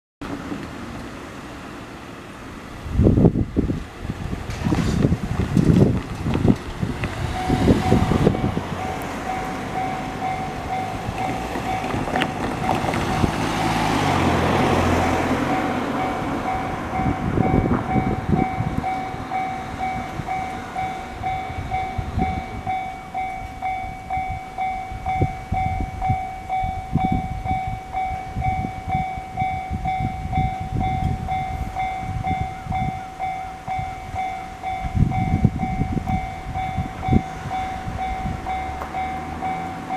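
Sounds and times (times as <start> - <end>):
train passing with wheel knocks: 0.2 - 2.0, 2.6 - 39.9
road vehicle passing: 0.2 - 39.9
level crossing alarm bell ringing: 7.3 - 14.2, 14.9 - 39.9.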